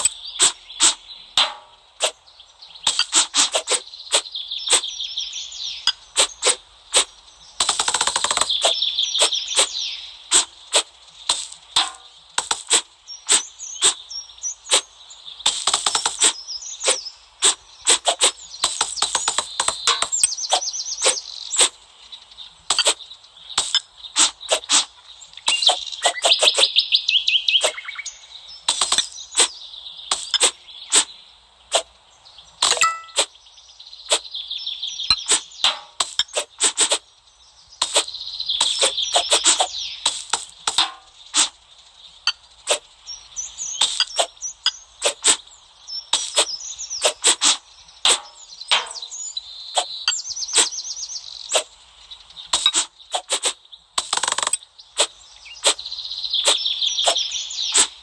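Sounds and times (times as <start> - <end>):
crisp slicing cuts: 0.0 - 1.0, 2.9 - 4.9, 6.2 - 7.1, 7.7 - 14.0, 15.5 - 21.8, 23.6 - 24.9, 25.5 - 26.7, 28.7 - 31.1, 35.2 - 37.0, 37.8 - 41.6, 45.0 - 45.4, 46.2 - 48.3, 52.6 - 55.8, 56.4 - 58.0
birds chirping and trilling: 0.0 - 58.0.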